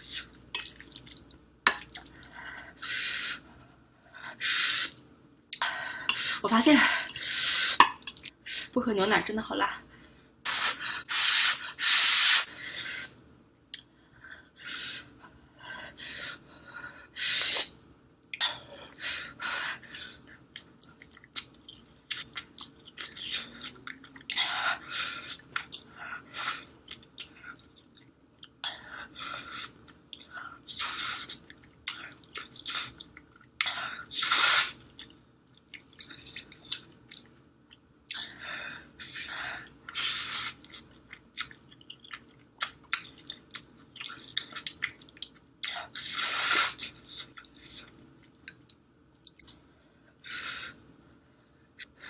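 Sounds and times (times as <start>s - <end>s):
chewing: 40.6s - 45.8s.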